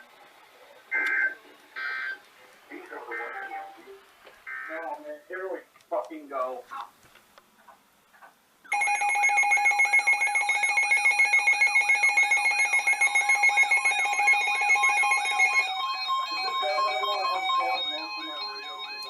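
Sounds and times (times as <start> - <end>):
stepped run of beeps: 8.7 - 15.6
electronic emergency alert tone: 8.7 - 19.0.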